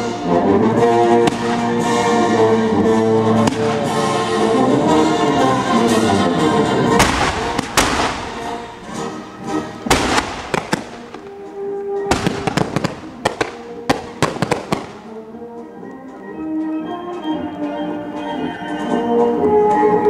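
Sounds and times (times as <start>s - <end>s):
music: 0.0s - 20.0s
fireworks bangs: 1.3s - 2.2s, 3.4s - 4.2s, 6.9s - 15.2s.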